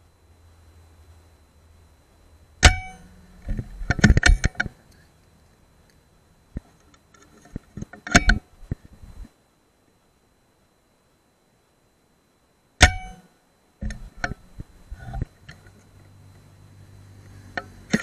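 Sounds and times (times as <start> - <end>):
metallic ring: 2.6 - 4.8, 7.2 - 8.5, 12.8 - 15.6
sharp clicks and knocks: 2.6 - 9.0, 12.8 - 13.2, 13.8 - 15.9, 17.6 - 18.0.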